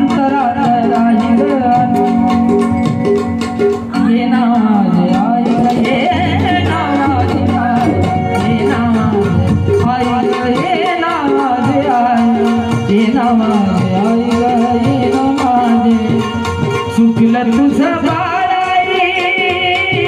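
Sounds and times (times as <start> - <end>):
hand percussion beat: 0.0 - 20.0
gliding melody line: 0.9 - 10.8.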